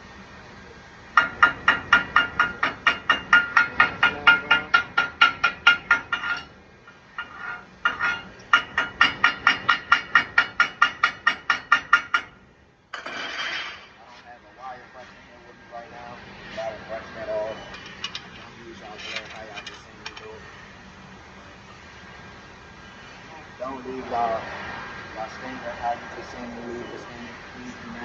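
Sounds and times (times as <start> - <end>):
hammer strikes on steel plate: 1.2 - 6.5, 7.2 - 12.4.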